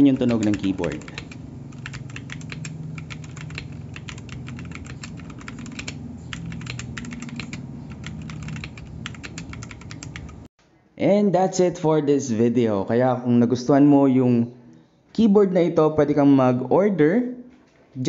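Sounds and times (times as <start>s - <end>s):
mechanical keyboard typing: 0.0s - 10.5s.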